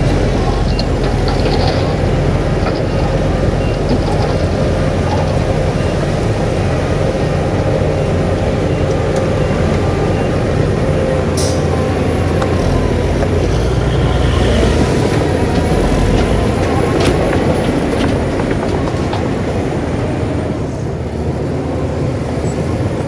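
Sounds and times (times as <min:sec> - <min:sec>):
heavy diesel engine running: 0:00.0 - 0:23.0
track clatter: 0:00.0 - 0:23.0
sharp metallic clanks: 0:11.3 - 0:13.4.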